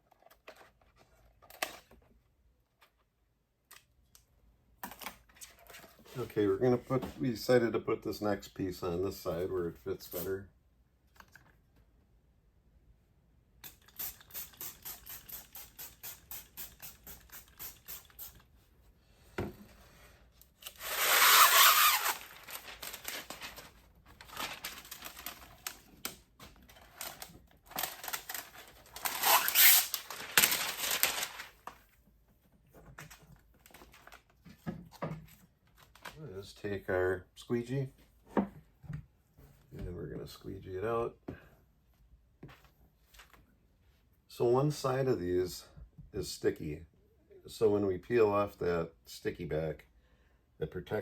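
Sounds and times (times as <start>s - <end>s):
spray bottle squirting: 13.6s - 18.5s, 29.1s - 29.9s
hissing spray bursts: 13.9s - 18.4s
film rustling: 20.6s - 32.0s.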